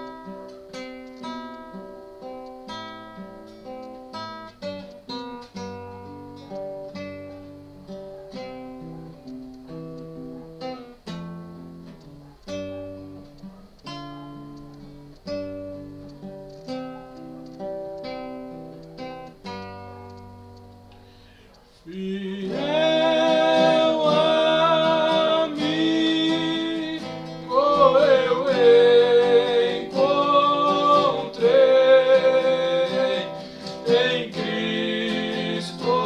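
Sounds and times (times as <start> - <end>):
acoustic guitar hymn tune: 0.0 - 36.0.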